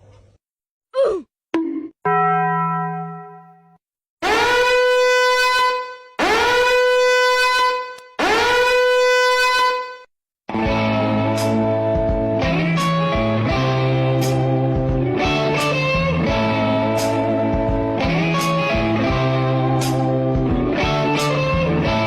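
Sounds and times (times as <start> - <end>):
horn-like blasts: 4.2 - 10.1.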